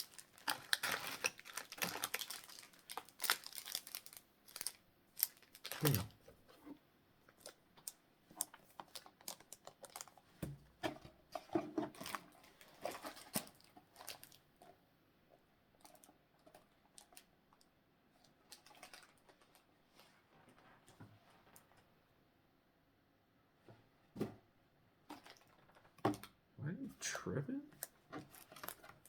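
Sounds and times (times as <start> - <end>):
cardboard box contents rummaged: 0.1 - 4.7.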